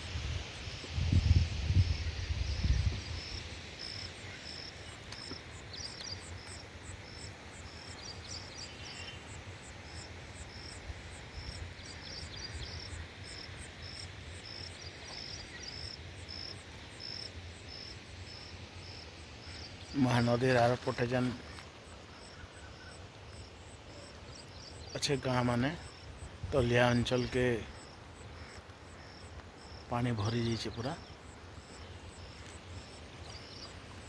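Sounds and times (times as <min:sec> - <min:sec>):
insect chirping: 0:00.0 - 0:34.0.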